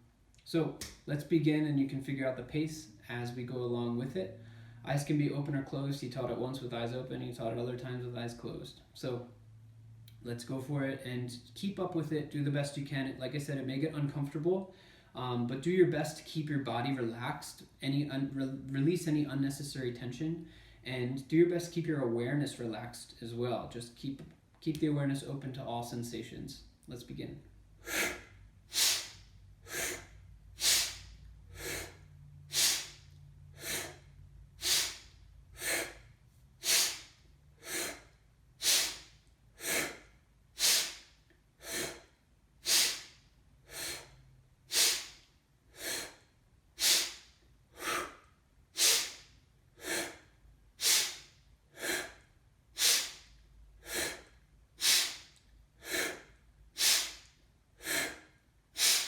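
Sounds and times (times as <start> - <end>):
forceful rhythmic breathing: 27.7 - 59.0.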